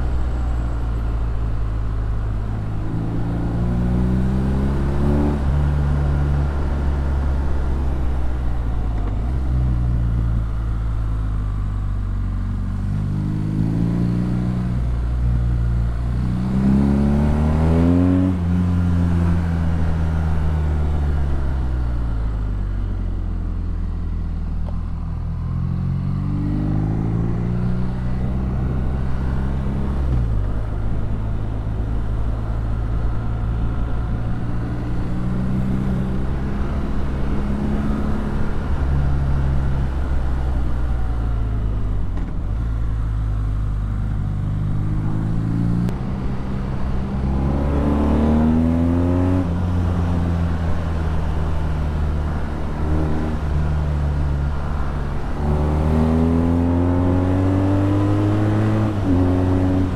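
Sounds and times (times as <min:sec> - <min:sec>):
motorcycle engine accelerating: 0:24.5 - 0:59.9.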